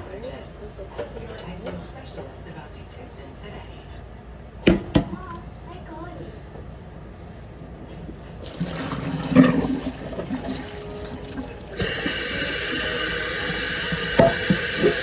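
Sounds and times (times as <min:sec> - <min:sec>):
tap water running into sink: 0:08.1 - 0:15.0.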